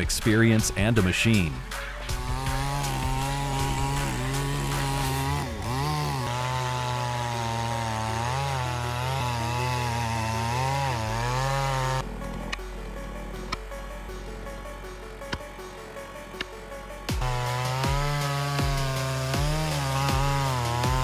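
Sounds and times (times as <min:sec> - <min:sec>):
chainsaw cutting wood: 0:00.4 - 0:12.6, 0:17.0 - 0:21.0.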